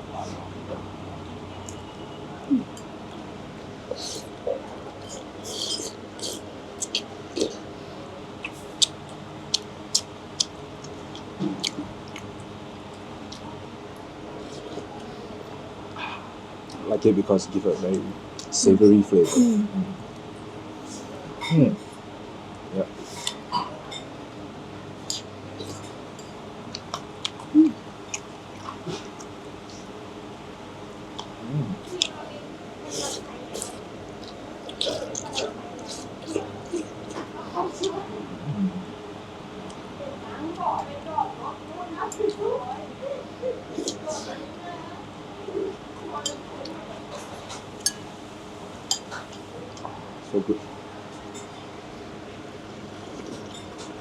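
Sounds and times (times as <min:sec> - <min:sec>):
low hum-like voice: 0:00.0 - 0:02.8, 0:14.3 - 0:20.0, 0:31.3 - 0:33.9, 0:34.7 - 0:39.0, 0:39.9 - 0:47.6
steady background hum: 0:00.0 - 0:54.0
chewing noodle soup: 0:03.9 - 0:07.7, 0:08.4 - 0:13.6, 0:26.7 - 0:29.9, 0:32.9 - 0:38.1
eating clicks and smacks: 0:04.0 - 0:07.6, 0:08.4 - 0:13.5, 0:25.0 - 0:25.8, 0:33.0 - 0:38.0.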